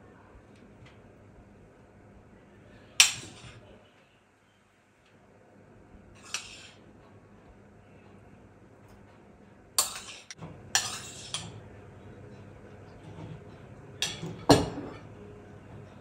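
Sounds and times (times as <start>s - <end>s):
dishes and utensils clinking: 3.0s - 3.6s, 6.2s - 6.8s, 9.8s - 11.6s, 12.3s - 16.0s.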